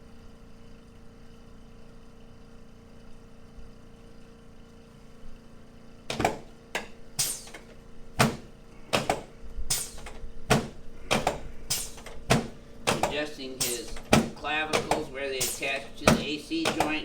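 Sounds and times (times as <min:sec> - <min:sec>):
joints popping and knocking: 0:06.1 - 0:17.0.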